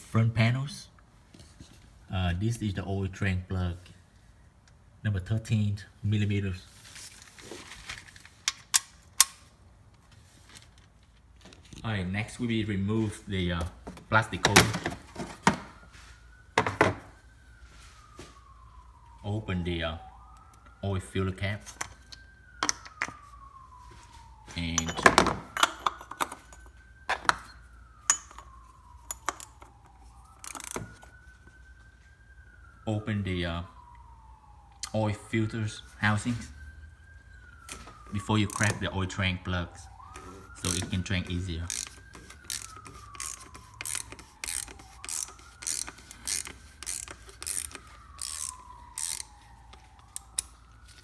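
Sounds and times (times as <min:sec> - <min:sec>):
distant siren wailing: 0:05.7 - 0:08.4, 0:10.2 - 0:51.0
ratchet wrench clicking: 0:30.4 - 0:30.8, 0:41.7 - 0:49.3.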